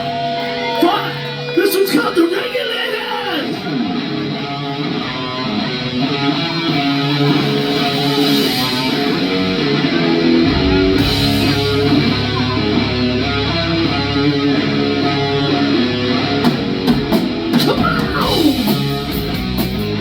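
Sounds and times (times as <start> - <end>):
electric guitar strumming chords: 4.0 - 20.0
sharp drum hits: 10.4 - 14.1
low sustained note: 10.4 - 16.2.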